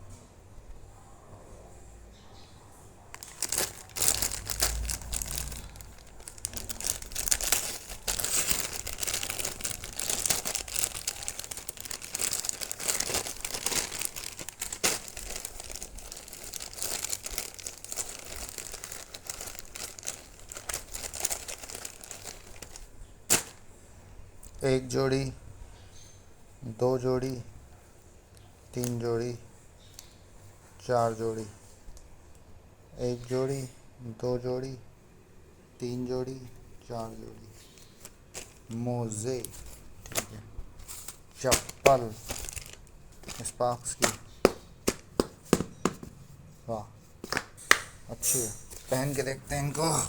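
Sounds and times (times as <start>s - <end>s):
packaging crinkling: 3.1s - 23.7s, 37.6s - 46.0s.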